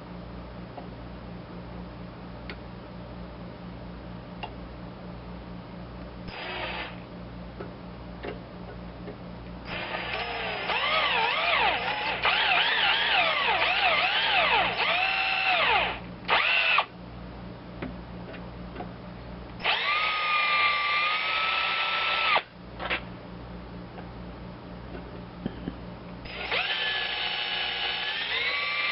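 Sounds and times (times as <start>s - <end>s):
rotary tool drilling whine: 6.3s - 7.0s, 9.7s - 16.9s, 19.6s - 23.0s, 26.3s - 28.9s.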